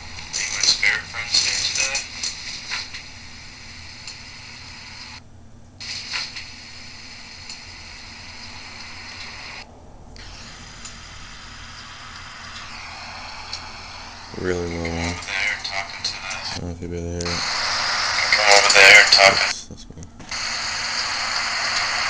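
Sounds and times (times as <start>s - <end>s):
low electrical hum: 0.0s - 22.0s
background hiss: 5.8s - 22.0s.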